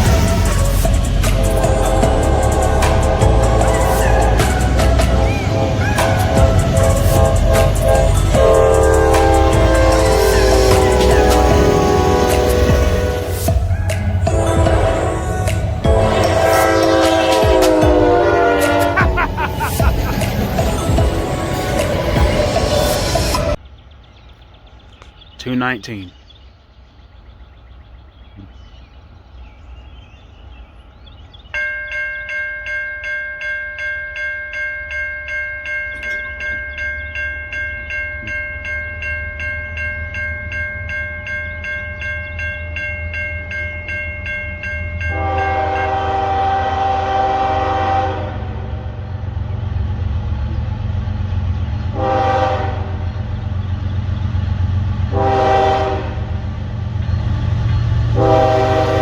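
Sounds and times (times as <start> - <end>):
train horn blasts: 0.0 - 22.1, 45.1 - 49.0, 51.9 - 53.1, 55.0 - 56.4, 58.1 - 59.0
locomotive engine rumble: 0.0 - 23.8, 43.8 - 59.0.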